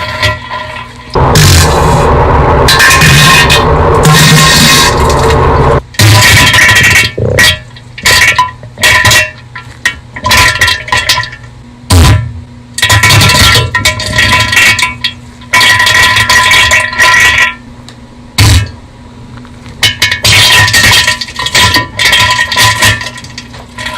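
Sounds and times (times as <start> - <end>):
bass-boosted diarrhea sound effect: 1.2 - 5.8.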